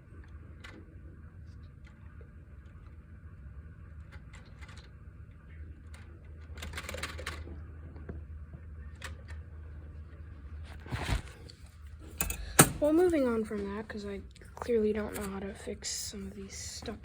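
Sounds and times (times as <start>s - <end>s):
typewriter mechanism clattering: 6.5s - 7.5s.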